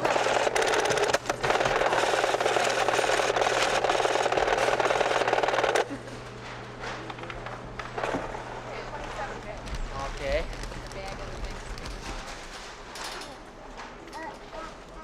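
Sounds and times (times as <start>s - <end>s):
checkout counter rattle: 0.0s - 5.9s
store background noise: 0.0s - 15.0s.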